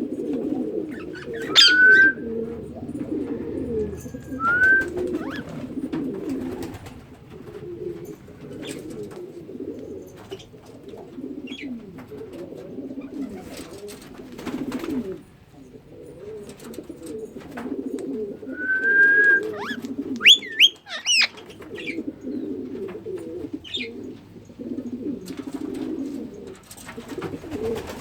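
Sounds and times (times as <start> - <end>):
pigeons cooing: 0.0 - 28.0
rising whistled bird calls: 1.0 - 2.4, 3.3 - 5.4, 18.5 - 21.3.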